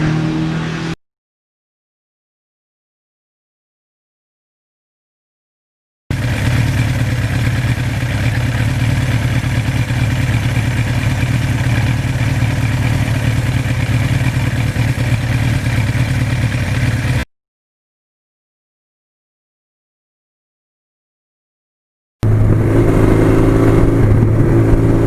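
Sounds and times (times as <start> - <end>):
motorcycle engine running: 6.1 - 17.2, 22.2 - 25.0
rush of noise: 22.2 - 25.0.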